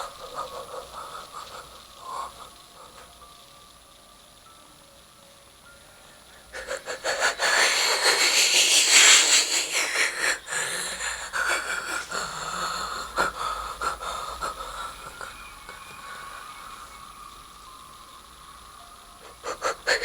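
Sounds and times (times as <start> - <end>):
breathy wheezing evil laugh: 0.0 - 3.1, 6.5 - 16.6, 19.2 - 20.0.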